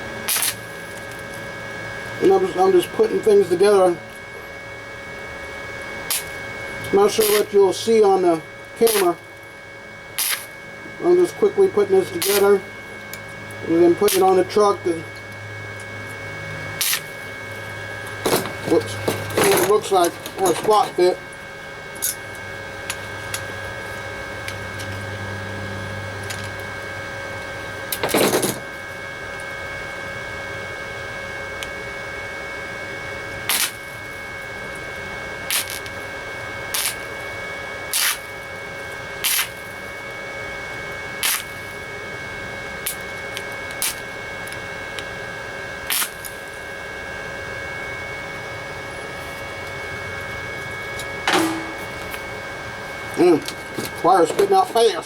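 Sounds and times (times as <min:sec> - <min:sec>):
welder machine whine: 0:00.0 - 0:55.0
welding bursts: 0:00.3 - 0:00.9, 0:06.1 - 0:06.4, 0:07.1 - 0:07.6, 0:08.8 - 0:09.2, 0:10.2 - 0:10.5, 0:12.2 - 0:12.6, 0:14.1 - 0:14.6, 0:16.8 - 0:17.2, 0:33.5 - 0:33.9, 0:35.5 - 0:36.0, 0:36.8 - 0:37.2, 0:37.9 - 0:38.3, 0:39.2 - 0:39.6, 0:41.2 - 0:41.8, 0:43.8 - 0:44.0, 0:45.9 - 0:46.4.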